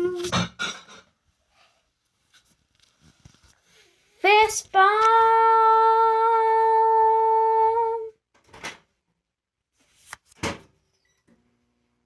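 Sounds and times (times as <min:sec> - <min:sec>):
girl humming a high note: 0:00.0 - 0:00.4.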